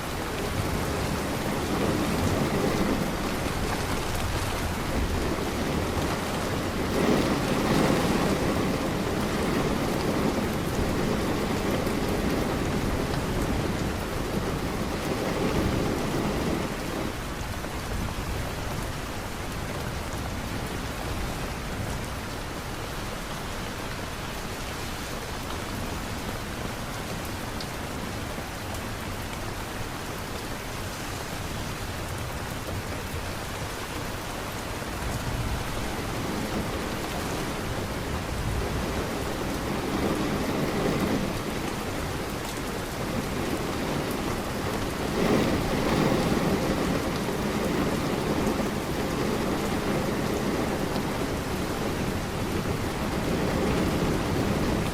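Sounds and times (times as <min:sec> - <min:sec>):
distant thunder rumbles: 0:00.0 - 0:17.2, 0:34.5 - 0:54.9
steady rain: 0:00.0 - 0:54.9.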